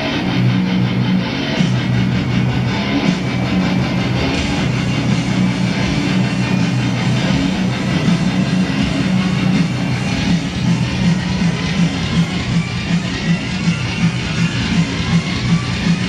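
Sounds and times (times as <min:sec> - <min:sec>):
rock music with guitar: 0:00.0 - 0:16.0.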